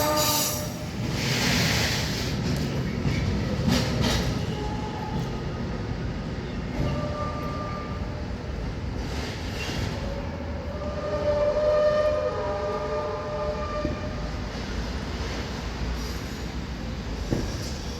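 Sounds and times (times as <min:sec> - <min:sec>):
train wheels squealing: 0:00.0 - 0:02.3, 0:09.1 - 0:10.2, 0:15.8 - 0:17.9
train wagons rumbling past: 0:00.0 - 0:17.9.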